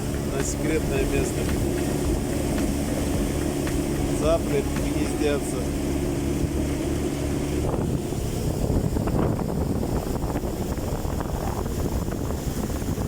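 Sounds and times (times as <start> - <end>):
motorboat engine hum: 0.0 - 13.0
rushing water: 0.0 - 13.0
wind buffeting microphone: 0.0 - 13.0.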